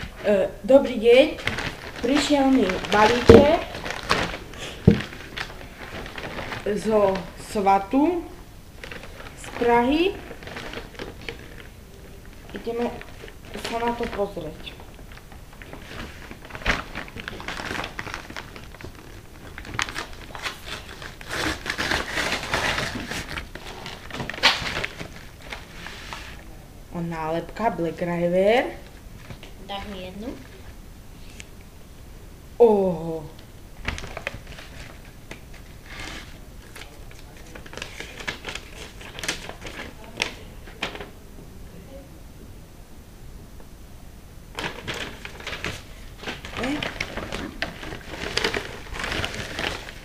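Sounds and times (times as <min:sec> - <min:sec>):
packaging crinkling: 0:01.1 - 0:08.0, 0:08.8 - 0:26.4, 0:33.8 - 0:41.2, 0:44.5 - 0:50.0.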